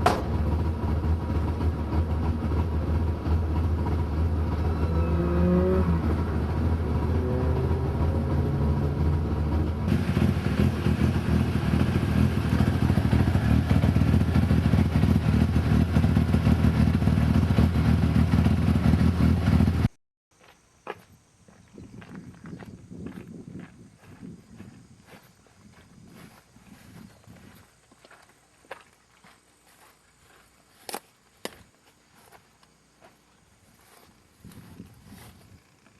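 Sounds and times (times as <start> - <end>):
car engine through holed exhaust: 0.0 - 19.9.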